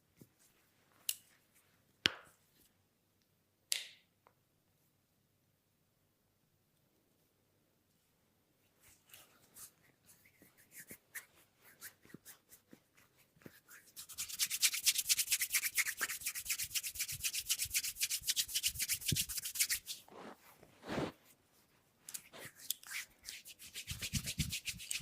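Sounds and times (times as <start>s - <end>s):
hands rubbing through hair: 8.8s - 25.0s.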